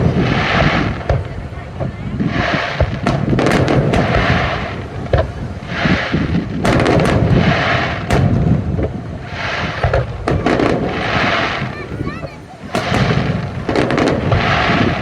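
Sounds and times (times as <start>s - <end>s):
fireworks bursting with bangs: 0.0s - 15.0s
fireworks hiss: 0.0s - 15.0s.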